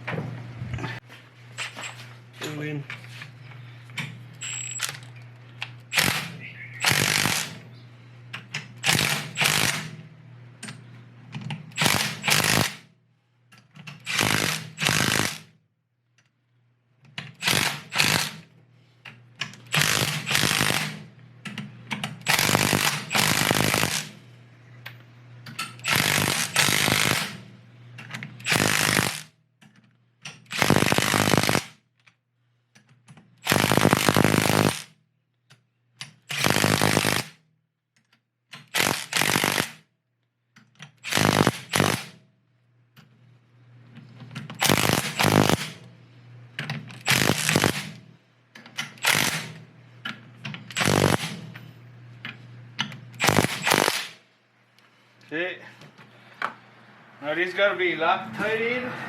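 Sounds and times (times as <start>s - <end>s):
impact wrench hammering: 5.9s - 7.6s, 8.5s - 9.9s, 11.7s - 12.8s, 14.0s - 15.5s, 19.6s - 21.0s, 22.2s - 24.1s, 25.8s - 27.4s, 28.4s - 29.3s, 30.3s - 31.7s, 33.4s - 34.9s, 36.1s - 37.4s, 38.5s - 39.8s, 41.0s - 42.1s, 44.6s - 45.8s, 47.0s - 48.0s, 48.9s - 49.6s, 50.7s - 51.4s, 52.8s - 54.1s.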